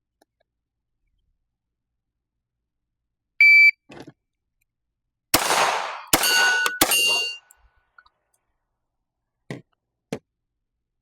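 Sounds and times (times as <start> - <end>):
pistol shots: 5.4 - 7.4
shot timer beep: 6.0 - 7.4
ringing tone: 6.2 - 7.4.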